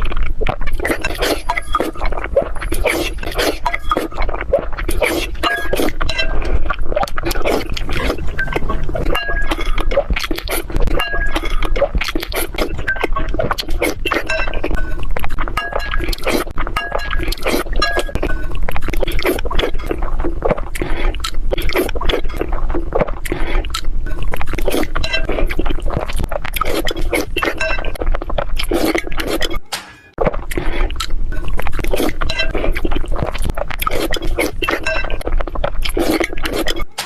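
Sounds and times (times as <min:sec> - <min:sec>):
hard objects clinking and clattering: 0:05.4 - 0:12.0, 0:12.7 - 0:19.2.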